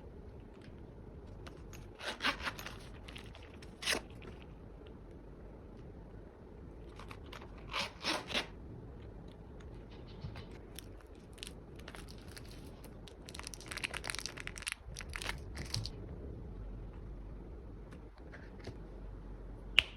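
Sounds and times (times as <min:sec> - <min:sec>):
packaging crinkling and tearing: 0:10.7 - 0:16.0.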